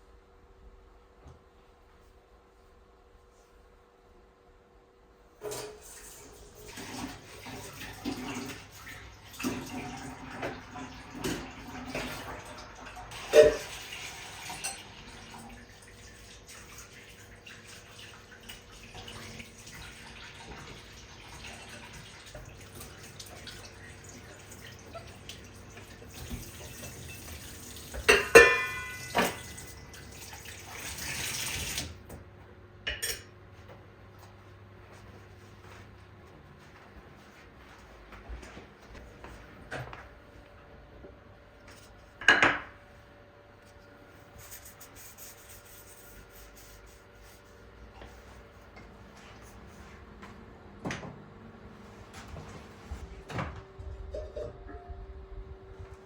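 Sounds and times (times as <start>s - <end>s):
water running from a tap: 5.6s - 32.0s
dishes and utensils clinking: 13.2s - 13.8s, 14.5s - 15.0s, 28.0s - 29.6s, 32.9s - 33.3s.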